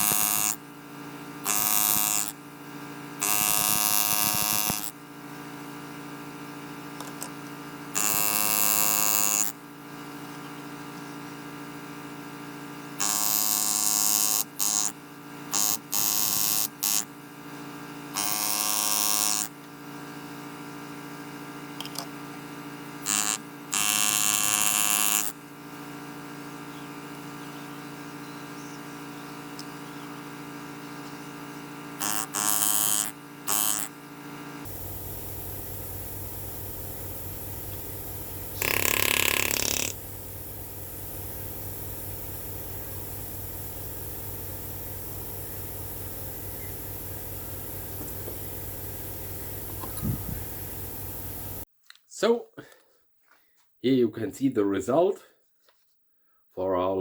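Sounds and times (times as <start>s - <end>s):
power tool motor hum: 0.0s - 0.6s, 1.4s - 2.4s, 3.2s - 5.0s, 7.9s - 9.6s, 12.9s - 19.8s, 23.0s - 25.5s, 31.7s - 51.6s
harsh grinding bursts: 1.5s - 2.4s, 3.2s - 5.0s, 8.0s - 9.6s, 32.0s - 33.9s, 34.6s - 51.6s.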